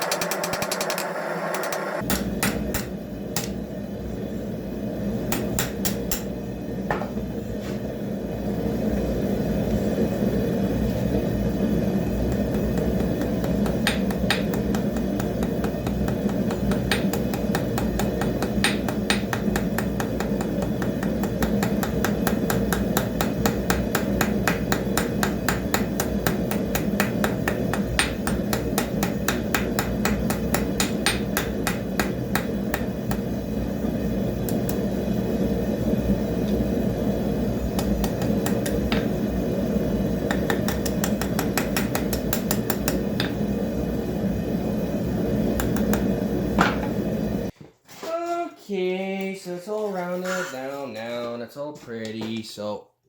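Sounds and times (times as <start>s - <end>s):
hammer striking metal on anvil: 0.0s - 3.6s, 5.3s - 6.3s, 12.3s - 33.3s, 37.8s - 39.2s, 40.3s - 43.4s.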